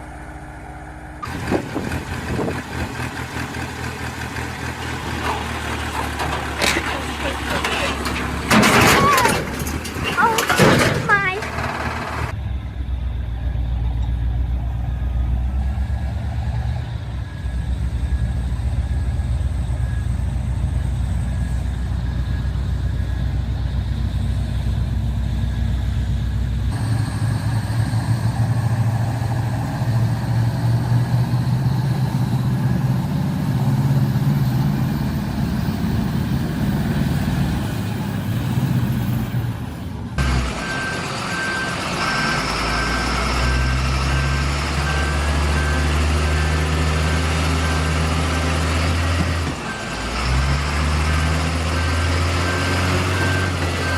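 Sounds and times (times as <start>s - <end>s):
engine humming: 0.0s - 53.9s
heavy vehicle engines rumbling: 0.0s - 53.9s.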